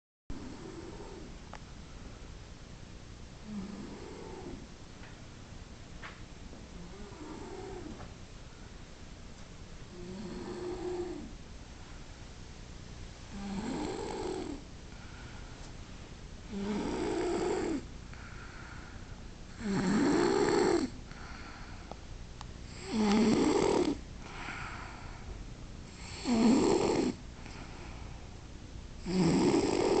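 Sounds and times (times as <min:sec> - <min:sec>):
rhythmic snoring: 0:00.3 - 0:01.4, 0:03.4 - 0:04.7, 0:06.8 - 0:08.1, 0:09.9 - 0:11.4, 0:13.3 - 0:15.3, 0:16.4 - 0:21.9, 0:22.7 - 0:25.3, 0:25.9 - 0:27.7, 0:29.0 - 0:30.0.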